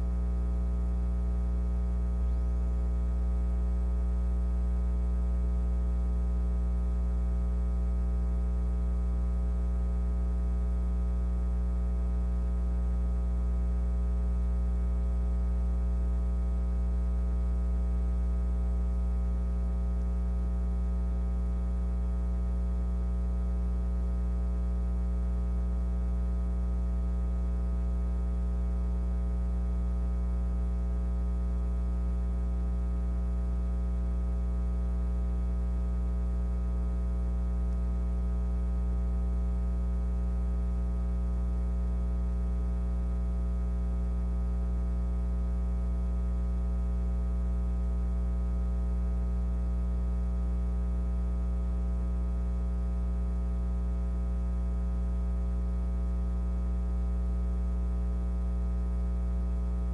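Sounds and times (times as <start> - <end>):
electrical hum: 0.0 - 43.5, 58.4 - 59.9.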